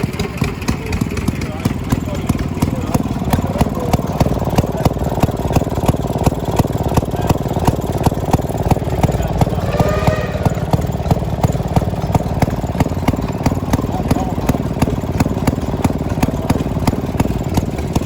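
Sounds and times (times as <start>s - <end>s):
old engine running: 0.0s - 8.6s, 12.6s - 18.0s
brief voice call: 9.6s - 10.8s.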